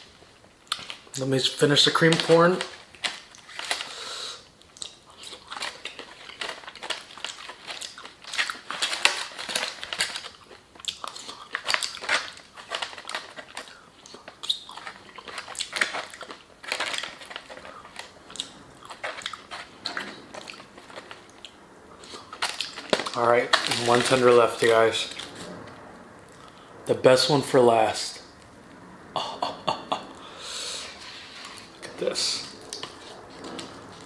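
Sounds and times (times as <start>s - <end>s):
person chewing and smacking: 0.6s - 1.2s, 4.6s - 23.9s.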